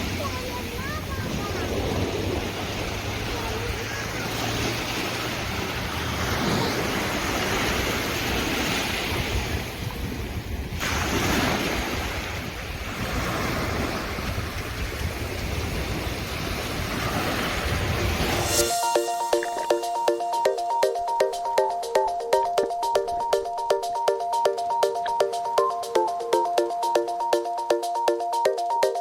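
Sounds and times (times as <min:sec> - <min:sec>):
wind buffeting microphone: 0:00.0 - 0:04.2, 0:04.8 - 0:18.5
sea waves washing: 0:00.0 - 0:29.0.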